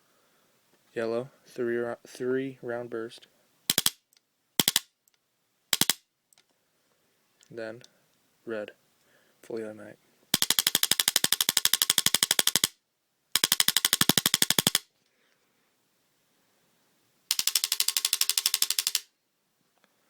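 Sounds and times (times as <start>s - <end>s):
paintball gun automatic fire: 13.4s - 14.8s.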